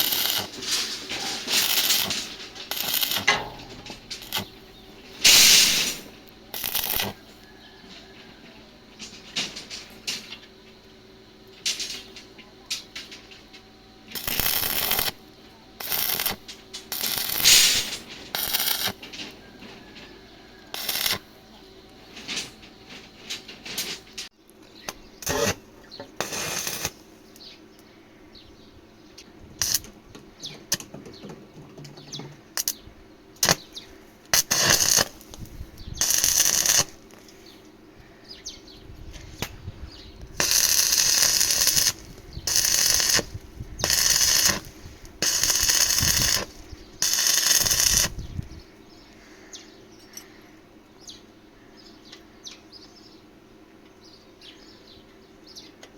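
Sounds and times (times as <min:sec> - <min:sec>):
electric arc welding bursts: 0:00.0 - 0:07.4, 0:14.1 - 0:19.3, 0:20.7 - 0:21.4, 0:25.2 - 0:27.1, 0:29.6 - 0:30.0, 0:33.4 - 0:37.2, 0:40.2 - 0:48.6
metal clinks and knocks: 0:00.5 - 0:06.0.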